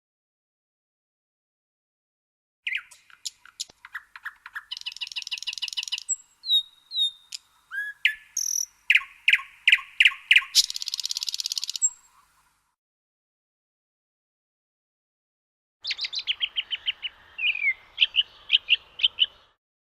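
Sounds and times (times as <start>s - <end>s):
songbird singing: 2.6s - 12.8s, 15.8s - 19.6s.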